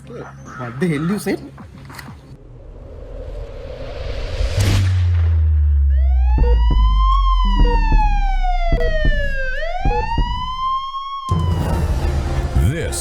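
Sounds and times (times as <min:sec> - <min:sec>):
rising whoosh: 0:02.4 - 0:06.1
wailing siren: 0:05.8 - 0:12.7
sharp hit and deep boom: 0:11.3 - 0:13.0.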